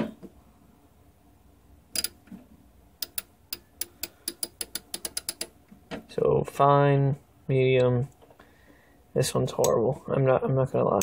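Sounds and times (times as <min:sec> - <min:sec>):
socket ratchet clicking: 0:02.0 - 0:02.2, 0:03.0 - 0:05.6.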